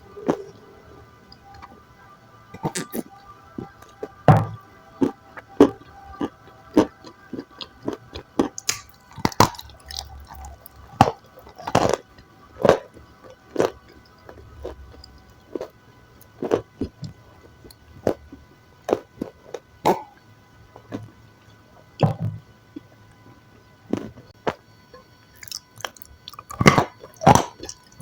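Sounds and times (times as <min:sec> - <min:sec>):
biting and chewing: 0:02.6 - 0:18.2, 0:23.9 - 0:28.0.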